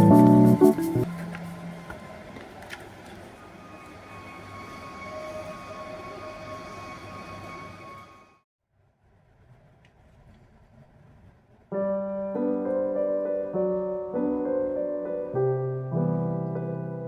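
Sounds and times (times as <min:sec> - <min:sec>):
piano music: 0:00.0 - 0:01.1, 0:11.8 - 0:17.0.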